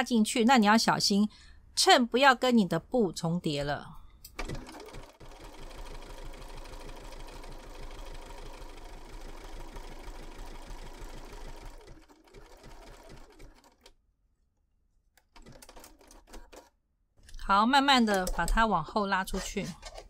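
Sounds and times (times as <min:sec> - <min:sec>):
sewing machine stitching: 0:04.4 - 0:13.9, 0:15.2 - 0:16.7.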